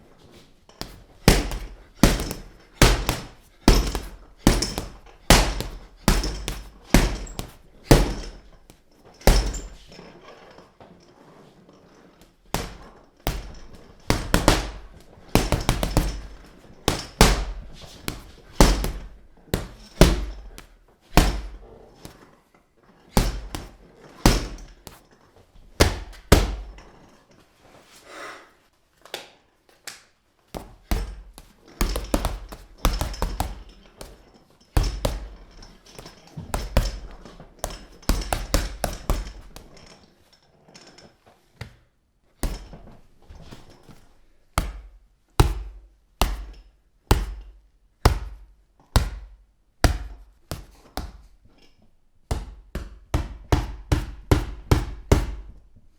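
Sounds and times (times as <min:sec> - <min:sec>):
punches landing with heavy thuds: 0:00.8 - 0:08.6, 0:09.2 - 0:09.9, 0:12.5 - 0:22.2, 0:23.1 - 0:25.0, 0:25.6 - 0:26.8, 0:30.6 - 0:34.2, 0:34.8 - 0:39.8, 0:42.4 - 0:43.6, 0:44.6 - 0:51.4, 0:52.3 - 0:55.5.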